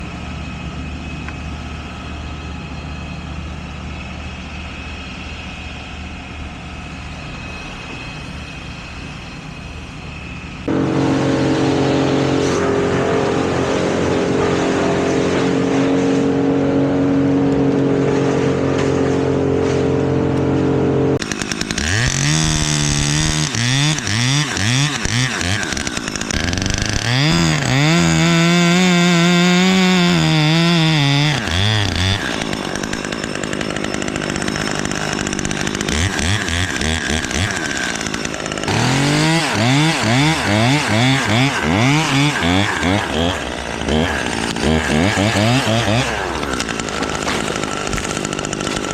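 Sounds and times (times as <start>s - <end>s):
engine running: 0.0s - 48.9s
chainsaw revving: 21.2s - 48.9s.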